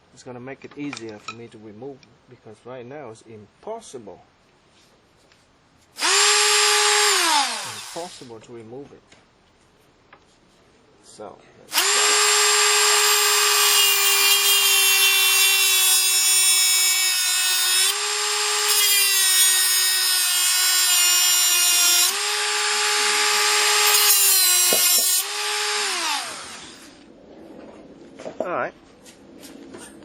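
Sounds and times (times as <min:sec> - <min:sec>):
rotary tool whining: 0:11.7 - 0:16.1, 0:17.7 - 0:27.1.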